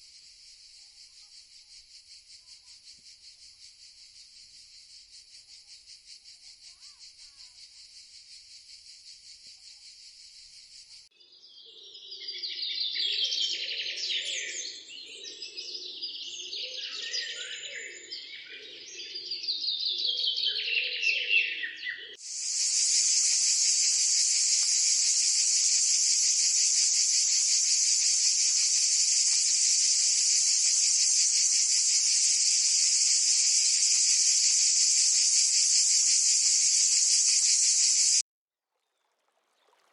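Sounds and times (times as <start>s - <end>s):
fast-pulsing insect trill: 0.0s - 11.1s, 22.2s - 38.2s
high insect drone: 0.0s - 11.1s, 22.2s - 38.2s
birds chirping: 22.3s - 38.2s.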